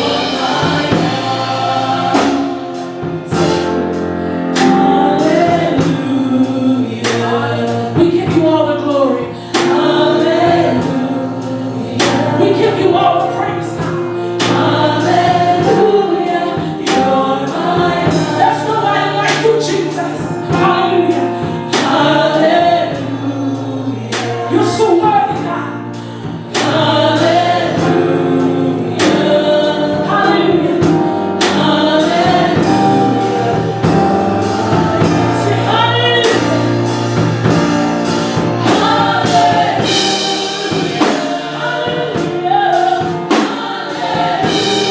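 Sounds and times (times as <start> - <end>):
drum beat: 0.0 - 3.9, 31.5 - 44.9
gospel choir singing: 0.0 - 44.9
instrumental accompaniment: 0.0 - 44.9.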